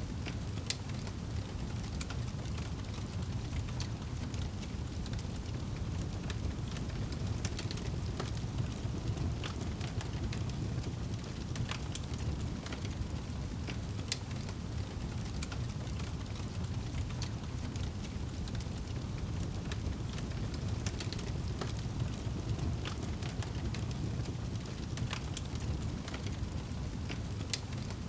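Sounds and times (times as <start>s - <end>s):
fire crackling: 0.1s - 28.0s.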